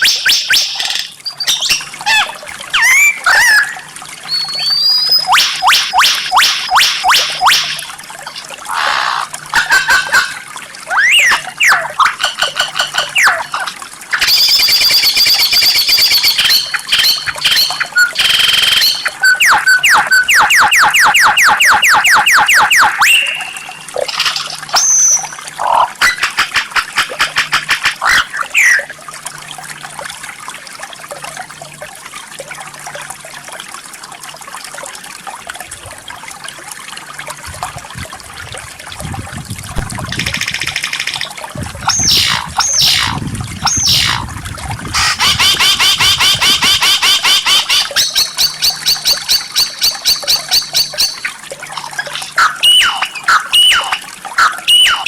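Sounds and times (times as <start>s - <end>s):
bird singing whistles: 0.0s - 1.9s, 2.8s - 3.7s, 4.3s - 7.7s, 10.9s - 11.8s, 14.2s - 23.9s, 24.7s - 25.4s, 52.4s - 54.1s, 54.7s - 55.0s
trickling water: 0.0s - 55.0s.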